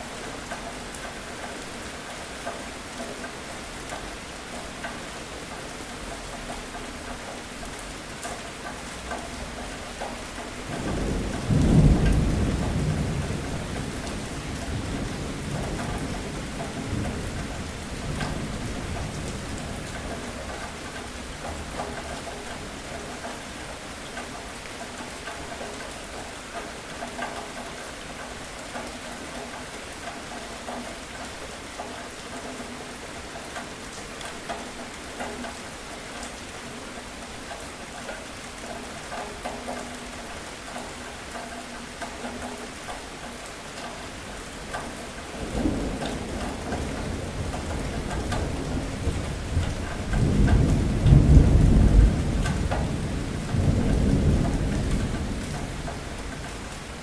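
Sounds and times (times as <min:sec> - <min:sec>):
rain falling and pattering: 0:00.0 - 0:57.0
rolling thunderclap: 0:10.7 - 0:20.0, 0:45.4 - 0:57.0.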